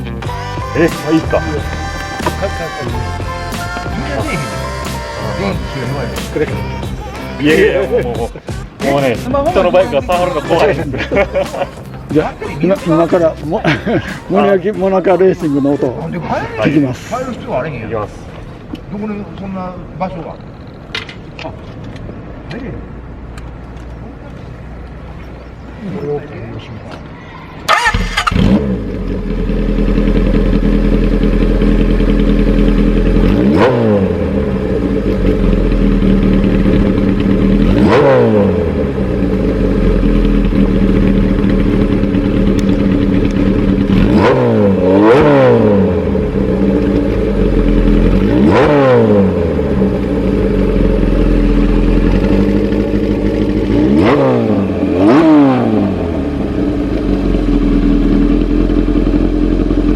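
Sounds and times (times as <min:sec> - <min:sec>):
motorcycle engine idling: 0:00.0 - 0:59.9
throttle blips revving engine: 0:27.6 - 0:59.9.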